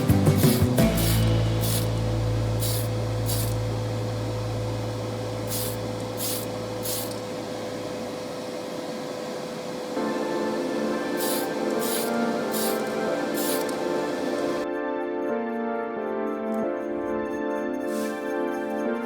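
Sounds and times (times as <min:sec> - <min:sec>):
spray paint hisses: 0:00.0 - 0:14.6, 0:17.8 - 0:19.0
steady low hum: 0:00.0 - 0:14.6.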